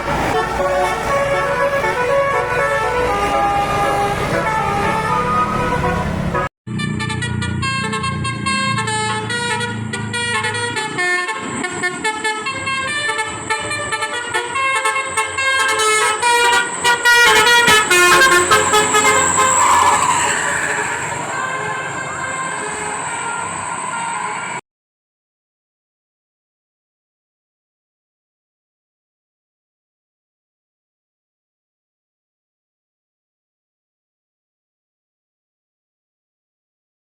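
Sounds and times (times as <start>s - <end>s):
engine rumble: 0.0s - 24.1s
musical vehicle horn tune: 0.0s - 24.6s.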